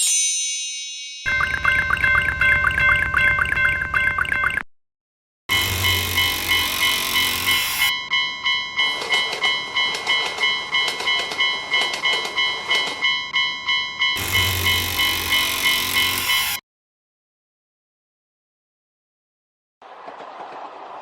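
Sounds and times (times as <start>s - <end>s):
railroad crossing bell ringing: 0.1s - 4.5s, 5.5s - 16.6s
train rushing past clattering: 19.8s - 21.0s.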